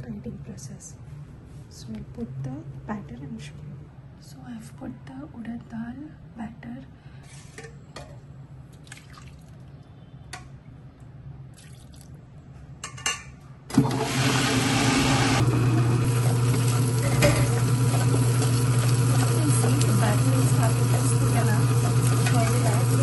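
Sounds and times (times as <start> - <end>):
wet grinder motor hum: 13.7 - 23.0.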